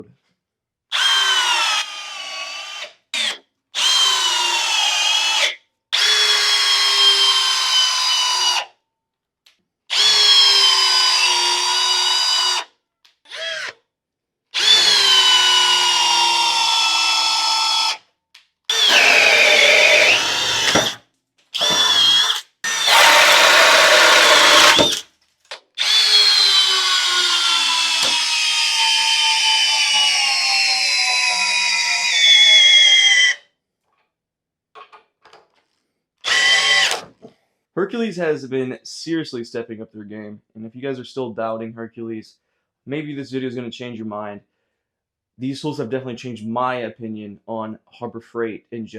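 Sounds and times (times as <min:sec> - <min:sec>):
hammer drill motor whine: 0:00.9 - 0:08.6, 0:09.9 - 0:12.6, 0:13.3 - 0:13.7, 0:14.6 - 0:18.0, 0:18.7 - 0:21.0, 0:21.6 - 0:25.0, 0:25.8 - 0:33.4, 0:36.2 - 0:37.1.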